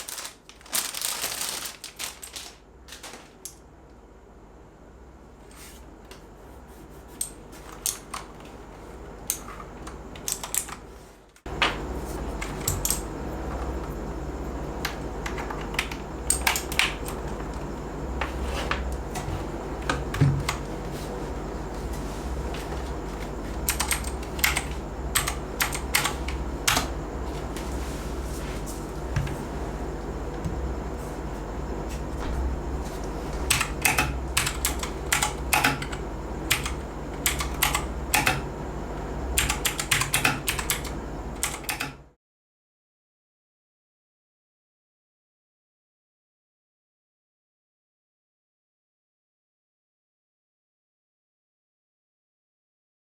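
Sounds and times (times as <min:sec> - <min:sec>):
steady low hum: 0:00.0 - 0:42.1
keyboard keys clicking: 0:09.3 - 0:10.8, 0:23.6 - 0:26.9, 0:33.4 - 0:38.4, 0:39.4 - 0:41.9.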